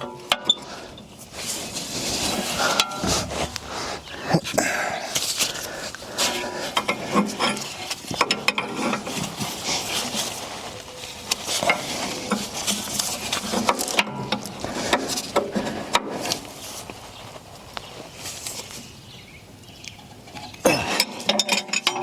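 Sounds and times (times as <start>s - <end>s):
metal clicks and scrapes: 0.0s - 4.1s, 20.3s - 22.0s.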